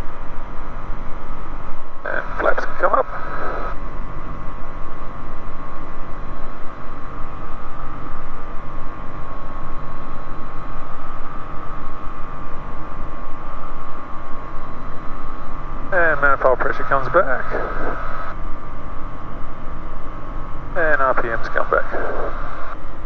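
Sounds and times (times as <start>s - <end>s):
aircraft engine and propeller drone: 0.0s - 23.0s.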